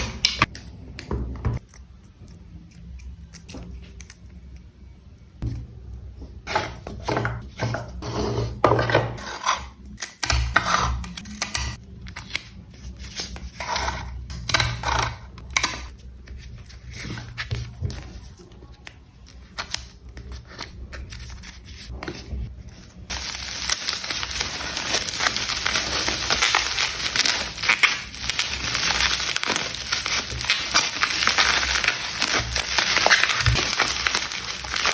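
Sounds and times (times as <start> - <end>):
packaging rustling and crinkling: 22.8 - 34.9.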